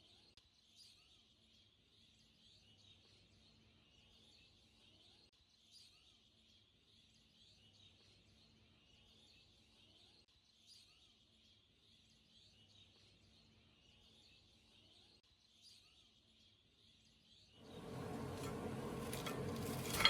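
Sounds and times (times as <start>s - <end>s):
faint steady hum: 17.6s - 20.0s.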